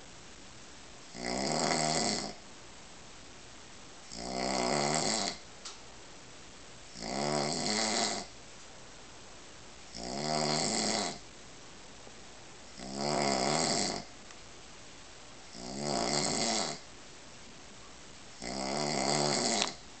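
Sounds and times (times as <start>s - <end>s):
man snoring: 1.1s - 2.4s, 4.1s - 5.4s, 7.0s - 8.3s, 9.9s - 11.2s, 12.8s - 14.1s, 15.5s - 16.8s, 18.4s - 19.8s.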